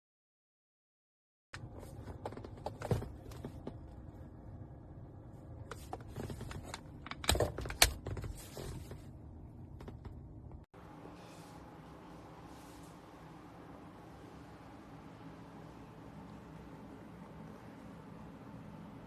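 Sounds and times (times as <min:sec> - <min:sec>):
object handling clicks and knocks: 0:05.6 - 0:09.0.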